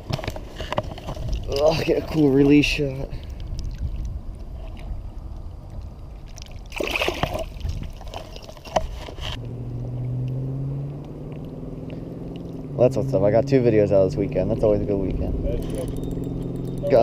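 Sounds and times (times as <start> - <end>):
water splash: 6.3 - 9.4
low steady rumble: 9.1 - 17.0
low motor hum: 9.2 - 17.0.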